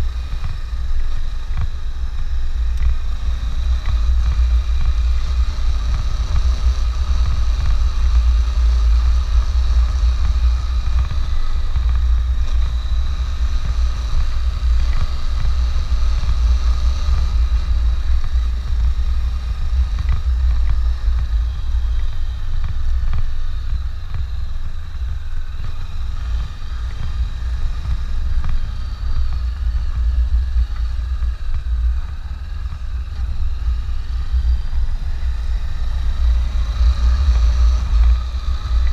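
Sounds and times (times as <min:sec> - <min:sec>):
motorcycle engine running: 0:00.0 - 0:38.9
wind buffeting microphone: 0:00.0 - 0:38.9.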